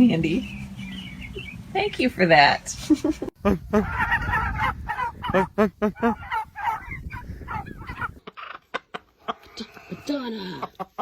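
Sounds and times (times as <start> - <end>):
chicken squawking: 3.5 - 8.6.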